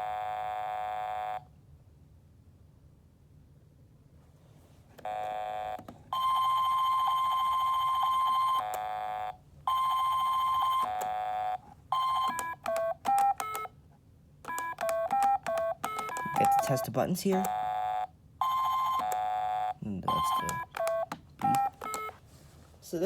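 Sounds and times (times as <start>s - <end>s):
electronic game buzzer tones: 5.1s - 13.7s, 14.5s - 22.2s
short electronic beeps: 14.5s - 17.6s, 20.1s - 22.1s.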